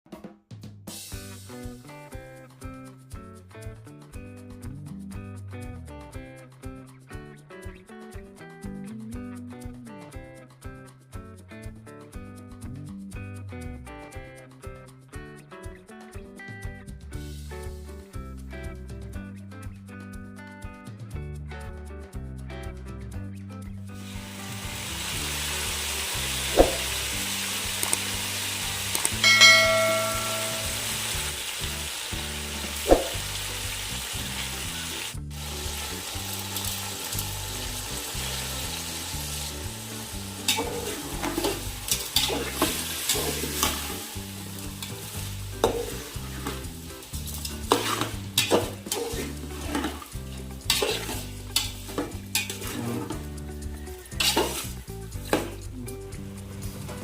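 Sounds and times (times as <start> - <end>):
food sizzling in hot oil: 24.0 - 57.0
spatula scraping a pan: 40.4 - 43.8, 47.4 - 53.2, 54.1 - 54.7.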